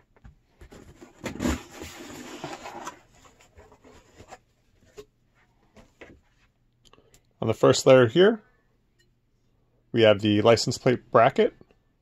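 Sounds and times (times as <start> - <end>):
cardboard box rustling: 0.6 - 5.0.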